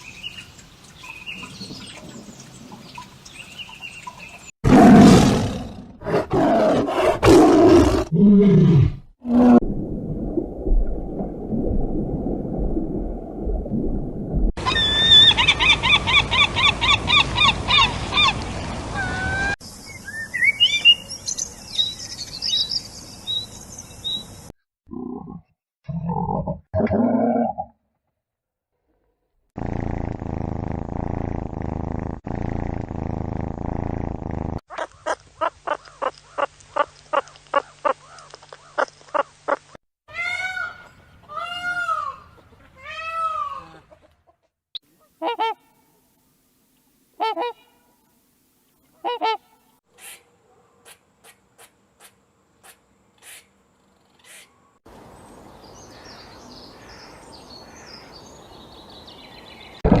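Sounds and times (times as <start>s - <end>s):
loud low animal rumble: 29.6s - 34.6s
sharp calls and clicks: 34.7s - 39.8s.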